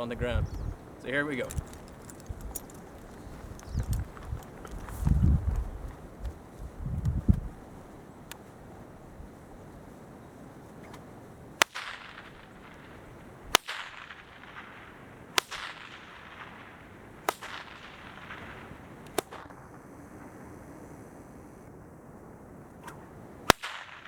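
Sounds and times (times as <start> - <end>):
bullwhip cracks: 11.6 - 19.7, 22.8 - 24.0
echo of whip cracks: 11.6 - 19.7, 22.8 - 24.0.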